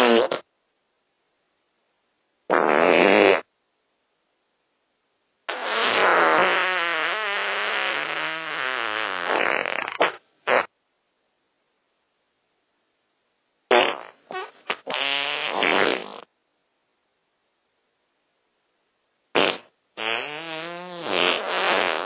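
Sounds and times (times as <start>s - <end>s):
fart sound effects: 0.0s - 0.4s, 2.5s - 3.5s, 5.5s - 10.7s, 13.7s - 16.3s, 19.3s - 22.0s.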